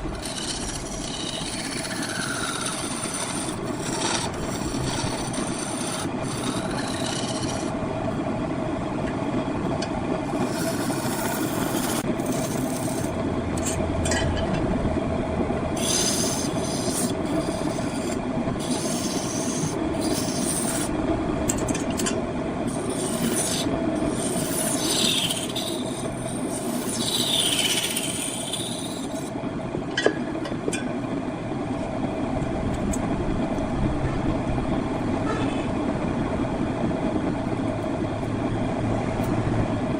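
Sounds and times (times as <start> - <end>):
tool rasping against wood: 0.0 - 7.8, 10.3 - 13.8, 15.8 - 20.9, 22.7 - 29.4
woodworking machine hum: 0.0 - 39.9.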